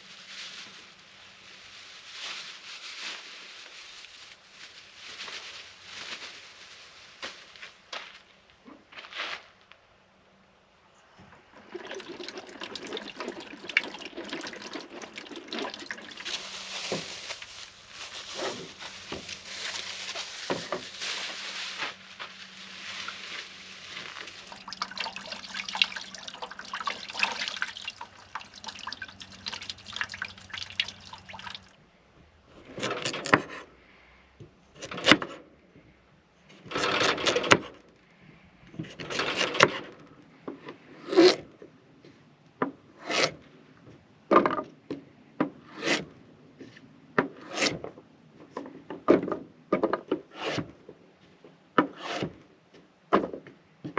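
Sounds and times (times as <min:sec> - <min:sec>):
liquid splashing and trickling: 0:11.6 - 0:18.3, 0:22.6 - 0:31.8.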